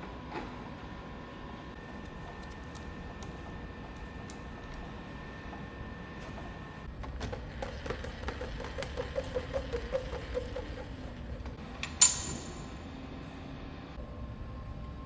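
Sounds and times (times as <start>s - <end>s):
sharp ringing metallic clink: 12.0s - 12.8s.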